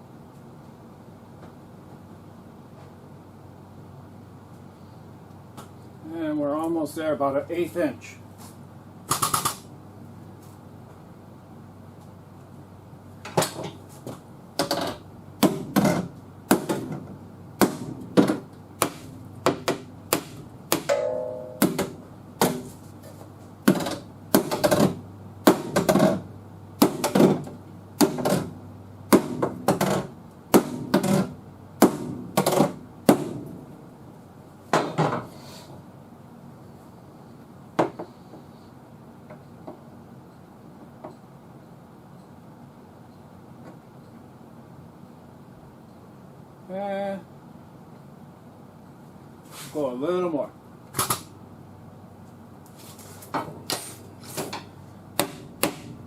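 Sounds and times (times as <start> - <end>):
hammer striking steel panel: 17.6 - 22.7, 55.2 - 56.0.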